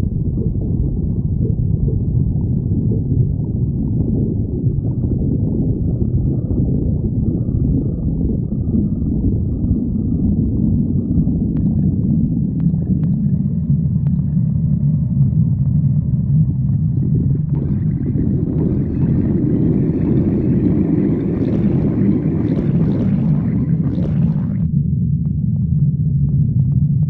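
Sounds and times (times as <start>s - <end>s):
stomach growling: 0.0s - 24.8s.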